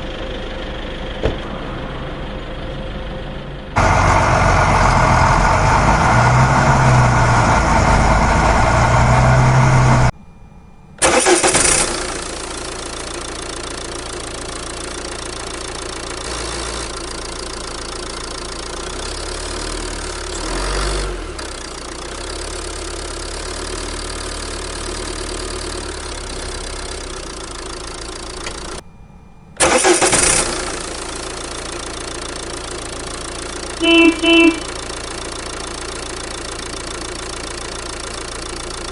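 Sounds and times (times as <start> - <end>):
engine running: 0.0 - 10.2, 11.0 - 28.8, 29.6 - 38.9
engine starting burst: 11.0 - 12.9, 29.6 - 31.3.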